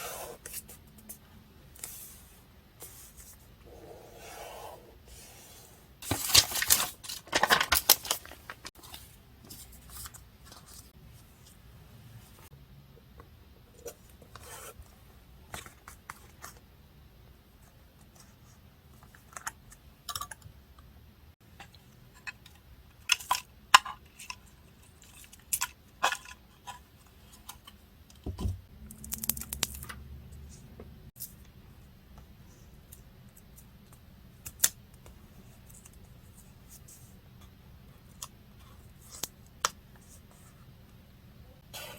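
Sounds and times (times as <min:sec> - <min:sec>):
paper rustling: 0:06.0 - 0:11.5.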